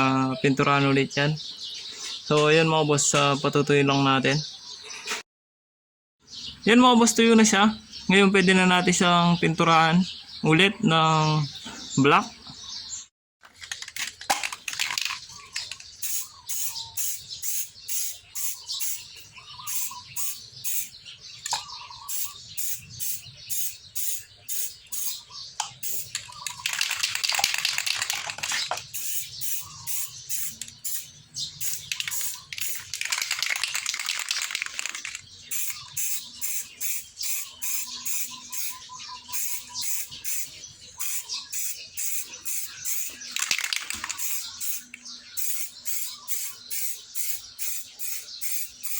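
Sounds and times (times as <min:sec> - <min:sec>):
spray paint can hissing: 0:14.7 - 0:21.0, 0:22.1 - 0:48.9
fast regular ticking: 0:25.8 - 0:48.9.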